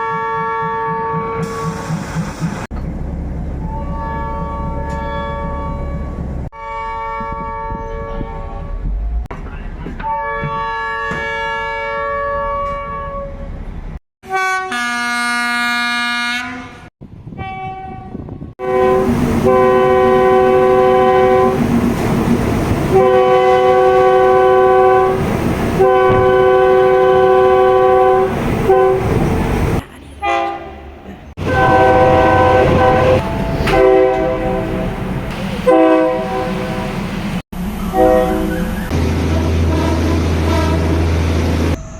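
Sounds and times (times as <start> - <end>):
train horn blasts: 0.0 - 1.8, 3.6 - 9.2, 10.0 - 13.5, 14.2 - 21.7, 22.8 - 29.2, 30.2 - 30.8, 31.4 - 37.1, 37.8 - 41.4.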